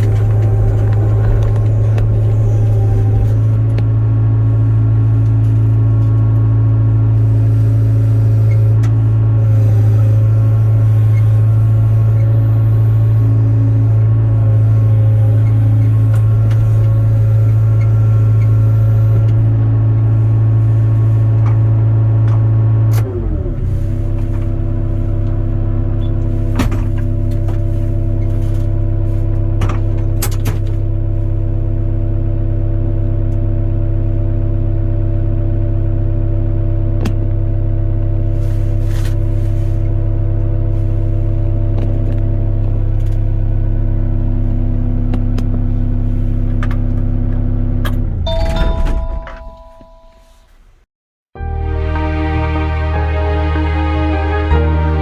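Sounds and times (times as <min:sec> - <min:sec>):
excavator diesel engine running: 0:00.0 - 0:50.2, 0:51.4 - 0:55.0.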